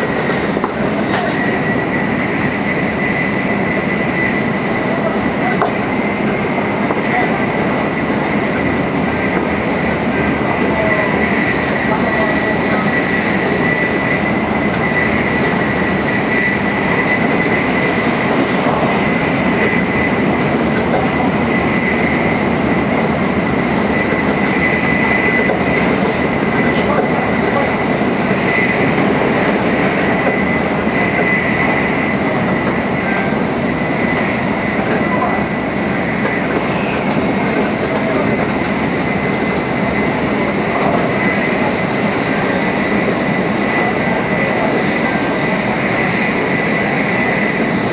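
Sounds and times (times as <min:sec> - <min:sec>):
train wheels rumbling on rail: 0:00.0 - 0:47.9
rushing air: 0:33.5 - 0:47.9
high-pitched whine: 0:33.7 - 0:47.9.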